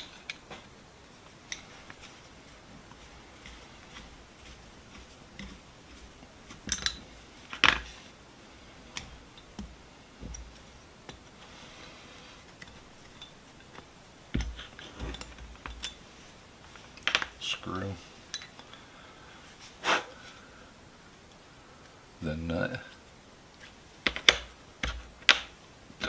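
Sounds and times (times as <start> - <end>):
metal parts and tools clinking: 6.5 - 8.0, 12.4 - 16.0, 18.2 - 18.6.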